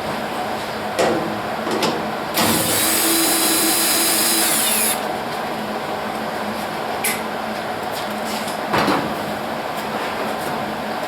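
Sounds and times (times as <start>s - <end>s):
electric power tool whining: 2.4s - 5.0s.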